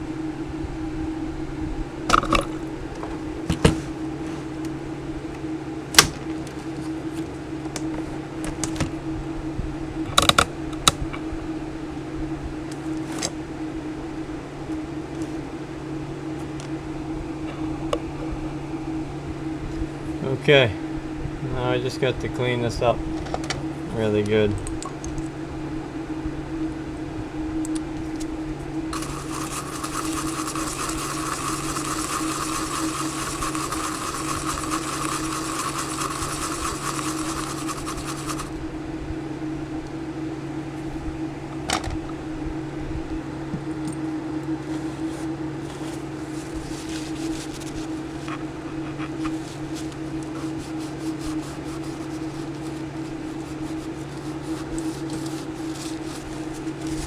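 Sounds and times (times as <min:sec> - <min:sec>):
rubbing and scratching: 0:28.9 - 0:38.6, 0:45.0 - 0:57.0.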